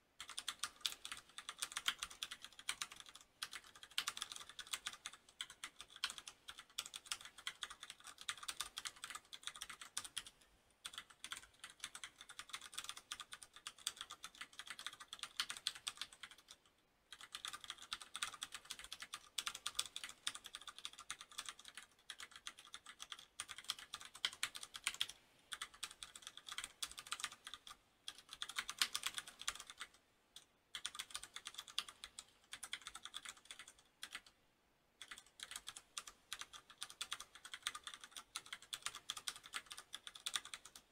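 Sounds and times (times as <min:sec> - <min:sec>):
mechanical keyboard typing: 0:00.2 - 0:34.4, 0:35.0 - 0:40.9.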